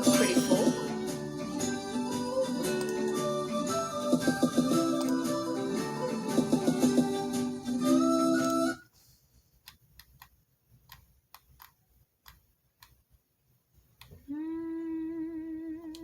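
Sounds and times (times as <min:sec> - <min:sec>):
slot game chime: 0:00.0 - 0:01.0
soft clicks: 0:09.6 - 0:13.0.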